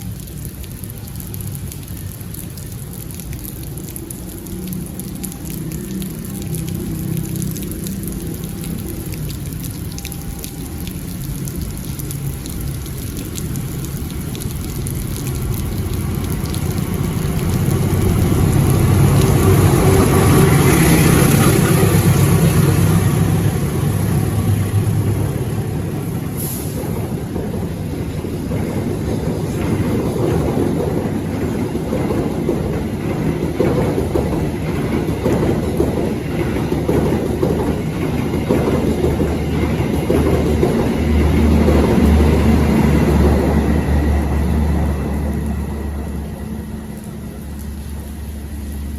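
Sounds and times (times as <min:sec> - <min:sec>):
rain hiss: 0:00.0 - 0:48.9
train engine rumble: 0:00.0 - 0:48.9.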